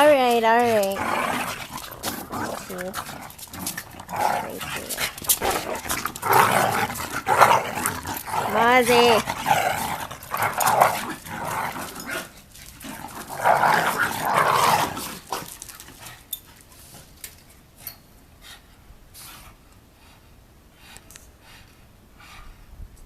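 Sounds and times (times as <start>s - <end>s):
dogs growling: 0.0s - 17.0s
dogs scuffling: 0.0s - 17.7s.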